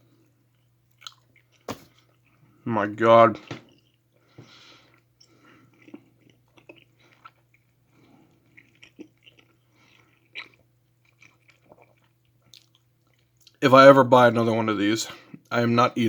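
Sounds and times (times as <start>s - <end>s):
faint chewing with mouth clicks: 0.1s - 2.6s, 3.5s - 13.6s.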